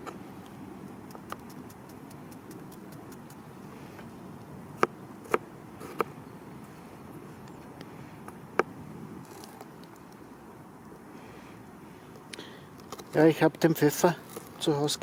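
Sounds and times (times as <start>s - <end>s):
steady low hiss: 0.0s - 15.0s
knife cutting cucumber: 4.8s - 6.1s.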